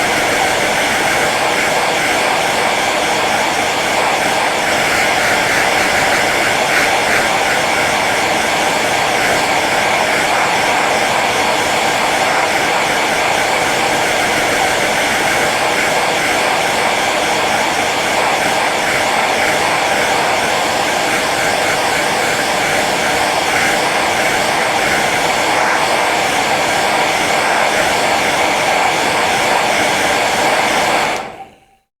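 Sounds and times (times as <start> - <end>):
hair dryer running: 0.0 - 31.8.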